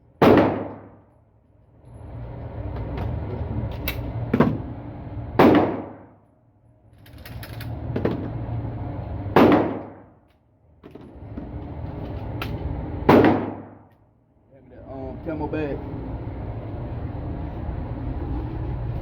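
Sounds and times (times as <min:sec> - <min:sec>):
loud gunshots: 0:00.2 - 0:01.0, 0:05.4 - 0:06.1, 0:09.4 - 0:10.0, 0:13.1 - 0:13.8.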